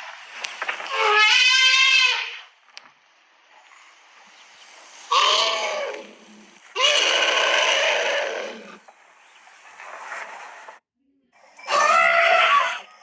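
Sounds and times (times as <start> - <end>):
elephant trumpeting: 0.9 - 2.4, 5.1 - 6.2, 6.8 - 8.8, 11.7 - 12.9.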